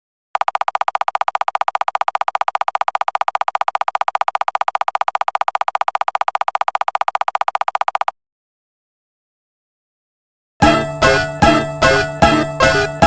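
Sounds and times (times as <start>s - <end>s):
rapid pulsing electronic tone: 10.6s - 13.0s.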